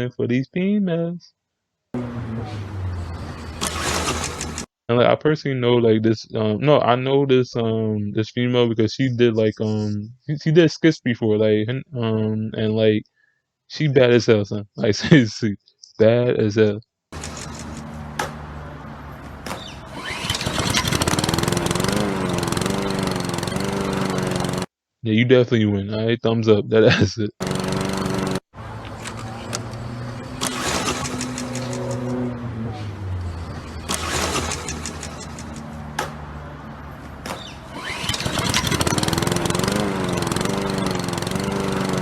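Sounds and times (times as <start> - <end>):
lawn mower engine running: 3.3 - 4.7, 17.2 - 24.7, 27.4 - 32.2, 33.2 - 42.0.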